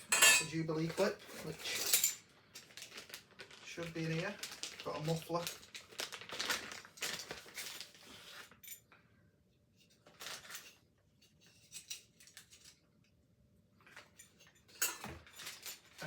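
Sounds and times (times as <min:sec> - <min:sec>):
packaging rustling: 0:02.6 - 0:08.6.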